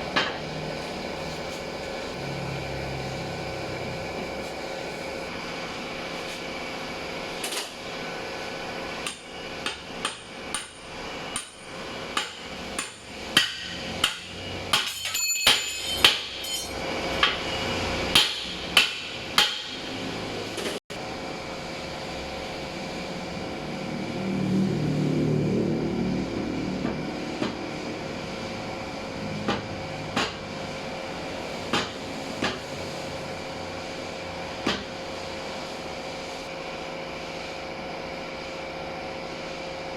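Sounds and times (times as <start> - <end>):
hammer strikes: 11.4 - 17.4, 18.1 - 20.0.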